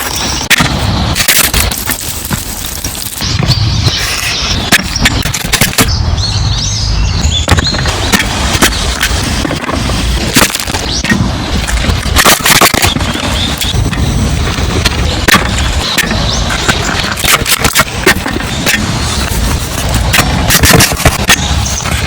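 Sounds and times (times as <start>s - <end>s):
bird chirps: 3.2s - 9.2s, 12.7s - 14.3s, 14.9s - 17.3s.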